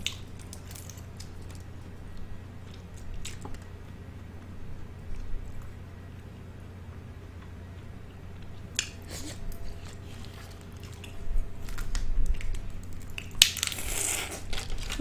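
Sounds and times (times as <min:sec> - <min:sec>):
wet chewing: 0:07.4 - 0:15.0
shell cracking and peeling: 0:09.9 - 0:15.0.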